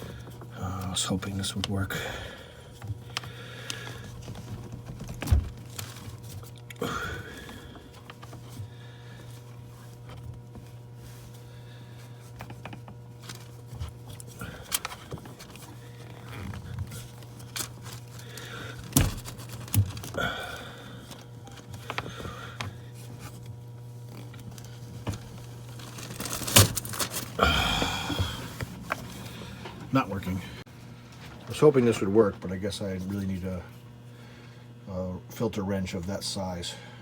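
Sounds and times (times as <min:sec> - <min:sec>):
steady low hum: 0:00.0 - 0:37.0
person grunting: 0:06.8 - 0:07.6, 0:27.4 - 0:28.6.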